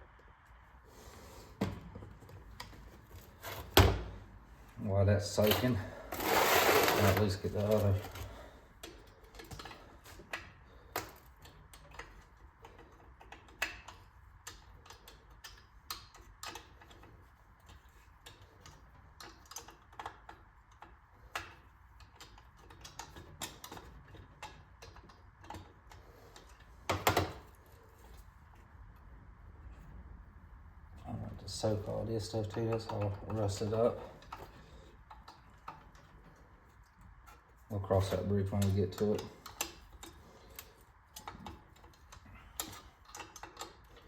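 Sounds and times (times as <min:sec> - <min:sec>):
hand tools clicking on metal: 0:37.2 - 0:44.0.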